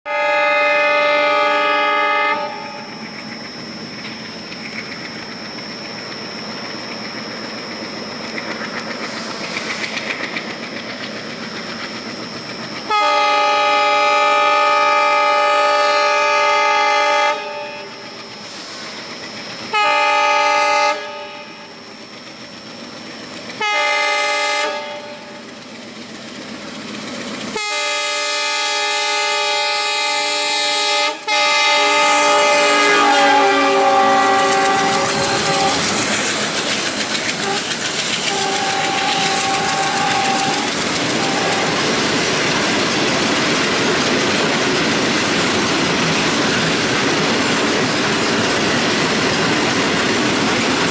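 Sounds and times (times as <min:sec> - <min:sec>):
locomotive air horn blasts: 0:00.1 - 0:02.9, 0:12.9 - 0:18.0, 0:19.7 - 0:21.7, 0:23.6 - 0:25.4, 0:27.5 - 0:36.1, 0:37.4 - 0:41.9
train engine chugging: 0:00.1 - 0:50.9
wagons rumbling on rails: 0:00.1 - 0:50.9.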